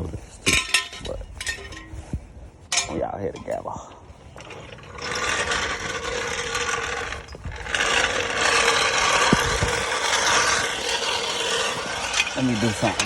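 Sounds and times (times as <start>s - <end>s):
mechanical rasping: 4.4s - 13.0s.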